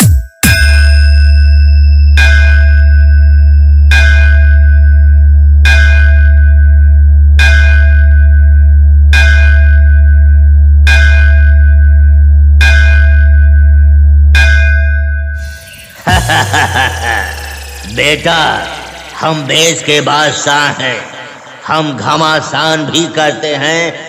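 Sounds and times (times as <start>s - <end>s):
ringing bell-like chime: 0.0s - 5.4s, 15.4s - 22.0s
loud deep bass tone: 0.5s - 22.9s.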